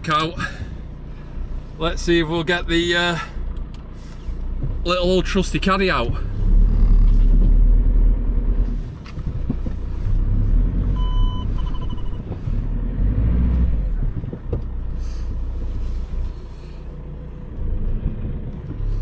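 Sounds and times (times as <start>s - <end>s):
van engine revving: 0.0s - 19.0s
electronic beeps: 11.0s - 12.2s.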